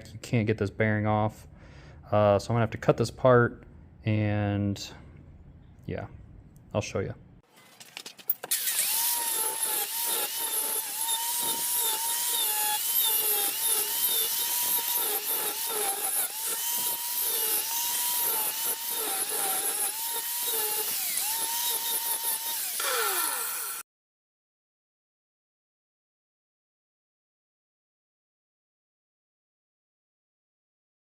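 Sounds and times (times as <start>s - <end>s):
rotary tool cutting metal: 8.4s - 23.8s.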